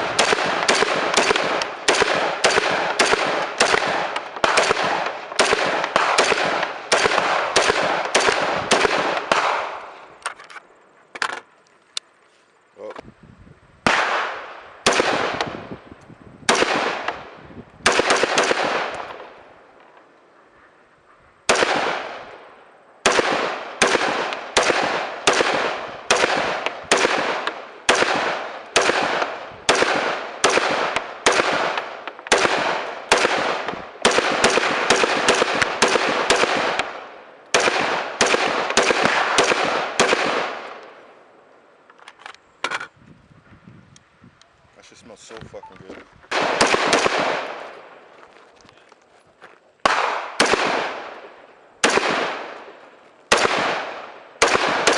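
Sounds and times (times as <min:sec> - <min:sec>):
gunshots echoing: 0:00.0 - 0:10.0, 0:13.8 - 0:15.8, 0:16.5 - 0:19.5, 0:21.4 - 0:41.2, 0:46.3 - 0:48.1, 0:49.8 - 0:54.9.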